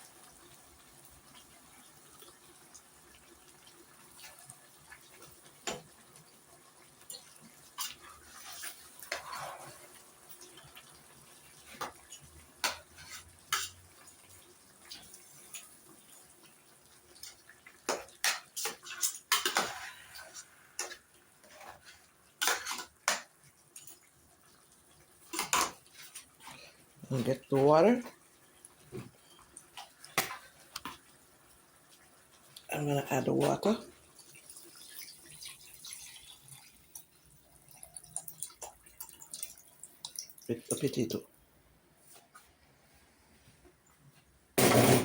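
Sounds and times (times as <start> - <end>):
dishes and utensils clinking: 11.8 - 13.9, 17.2 - 21.8.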